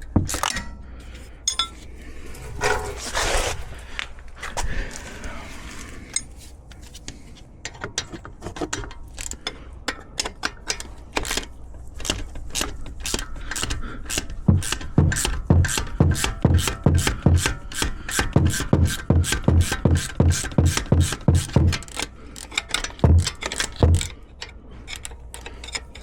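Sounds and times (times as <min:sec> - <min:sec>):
ratchet wrench clicking: 0:09.1 - 0:26.0
heavy metal knocks: 0:14.4 - 0:22.0, 0:23.0 - 0:24.2.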